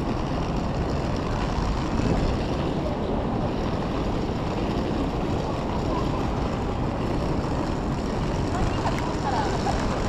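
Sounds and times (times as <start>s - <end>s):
low traffic rumble: 0.0s - 10.0s.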